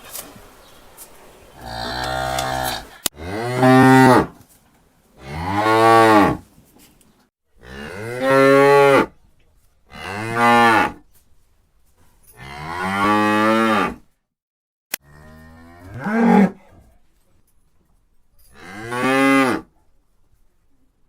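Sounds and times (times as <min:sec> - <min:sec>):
cow mooing: 0:01.6 - 0:04.4, 0:05.2 - 0:06.4, 0:07.6 - 0:09.1, 0:12.4 - 0:14.0, 0:15.0 - 0:16.6, 0:18.6 - 0:19.7.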